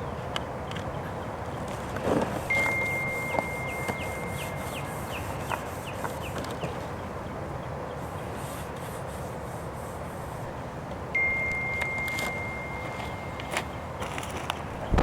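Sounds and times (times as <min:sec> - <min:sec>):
outdoor background noise: 0:00.0 - 0:15.0
clean high tone: 0:02.4 - 0:05.9, 0:11.1 - 0:14.1.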